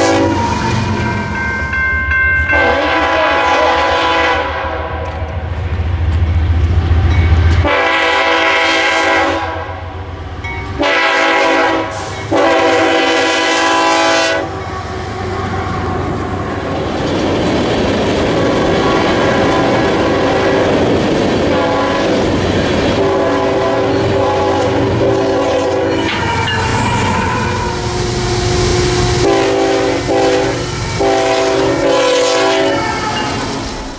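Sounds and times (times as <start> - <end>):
locomotive horn blasts: 0.0 - 0.5, 2.5 - 5.4, 7.6 - 9.9, 10.8 - 15.8, 18.7 - 20.6, 21.5 - 22.2, 22.9 - 33.5
train rolling past: 0.0 - 33.9.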